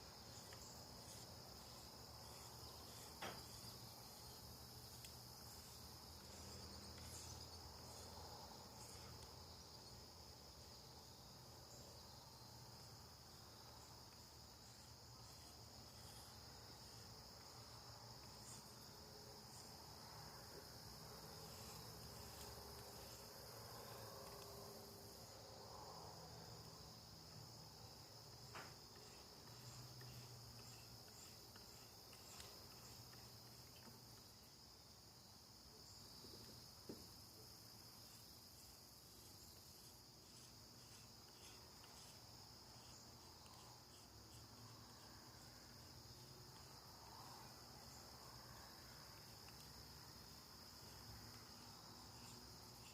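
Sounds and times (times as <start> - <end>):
crickets trilling: 0.0 - 52.9
faint ticks: 28.3 - 34.4, 49.0 - 49.8.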